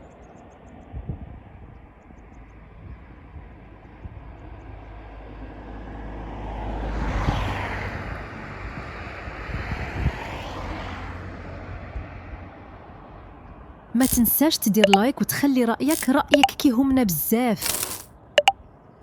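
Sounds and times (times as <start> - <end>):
passing vehicle: 5.1 - 12.4.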